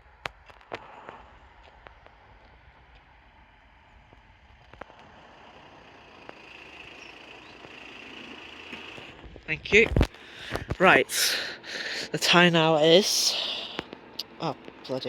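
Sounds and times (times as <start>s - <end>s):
vehicle approaching rumble: 3.4s - 11.8s.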